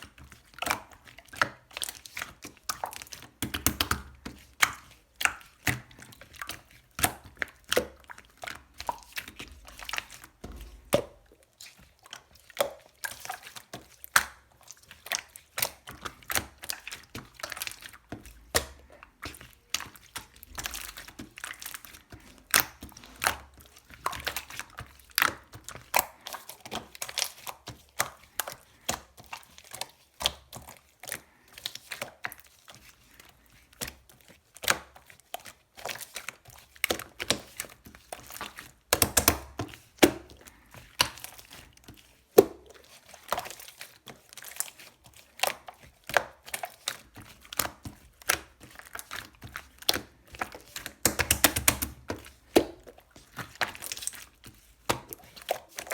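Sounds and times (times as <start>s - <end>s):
slime popping and crackling: 36.8s - 40.4s, 45.4s - 55.9s.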